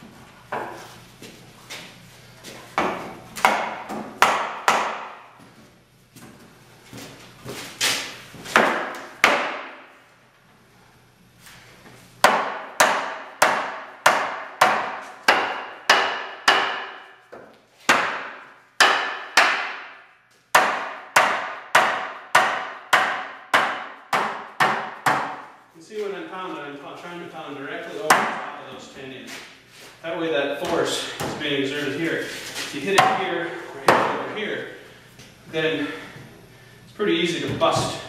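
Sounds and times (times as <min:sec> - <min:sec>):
hammer blows on wood: 0:12.2 - 0:17.2.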